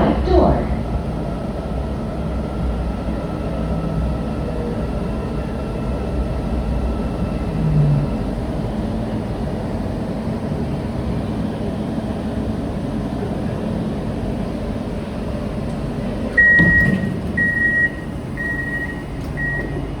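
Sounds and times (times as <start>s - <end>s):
train interior hum: 0.0s - 20.0s
door warning beeps: 16.4s - 20.0s.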